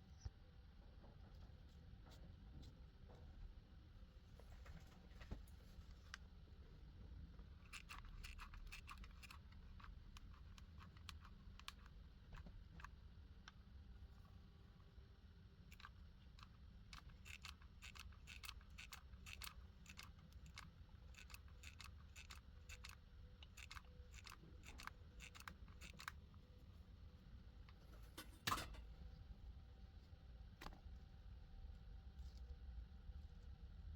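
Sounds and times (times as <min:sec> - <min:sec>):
low steady hum: 0:00.0 - 0:33.9
small parts clicking and snipping: 0:07.6 - 0:13.6, 0:15.7 - 0:26.5.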